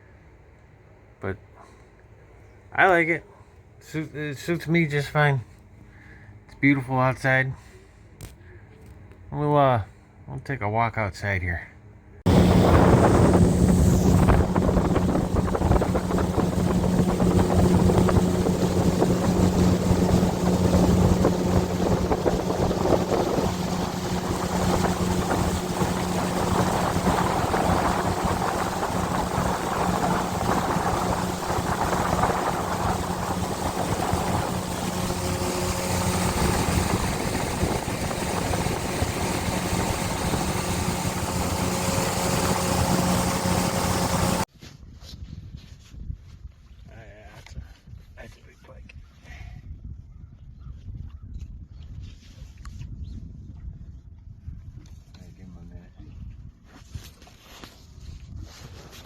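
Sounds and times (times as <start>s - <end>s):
boat motor running: 12.3s - 44.5s
wind noise on microphone: 12.3s - 46.9s, 49.6s - 55.1s.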